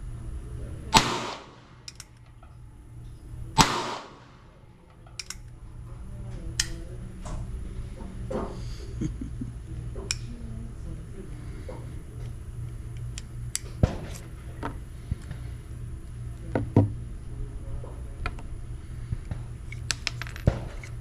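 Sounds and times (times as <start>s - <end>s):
steady low rumble: 0.0s - 21.0s
handgun shots: 0.9s - 2.2s, 3.6s - 5.4s.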